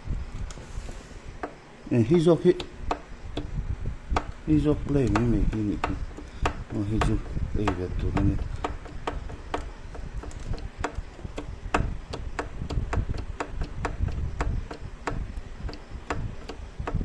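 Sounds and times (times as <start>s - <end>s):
clutch basket clicking: 4.2s - 17.0s.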